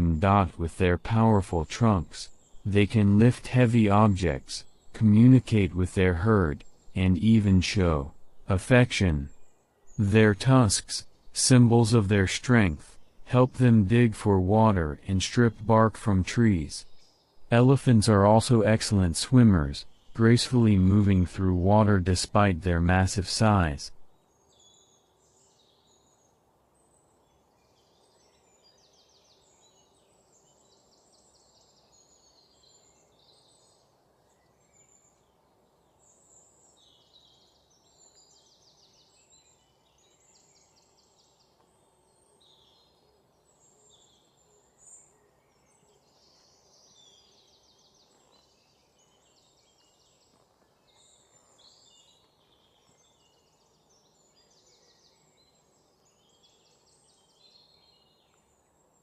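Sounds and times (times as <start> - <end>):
low steady hiss: 0.0 - 59.0
birds chirping and trilling: 35.9 - 59.0.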